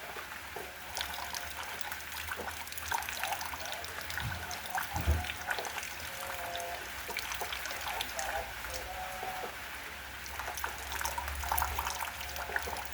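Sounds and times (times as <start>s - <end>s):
water trickling: 0.0s - 12.9s
soft low thump: 4.2s - 5.4s.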